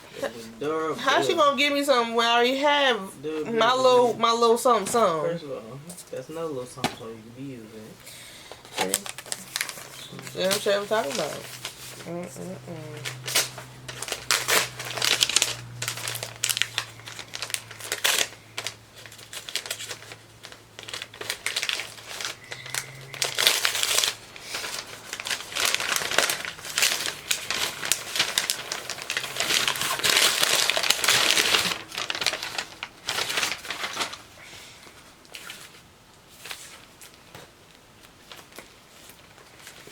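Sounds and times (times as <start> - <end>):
paper crinkling: 8.4 - 39.9.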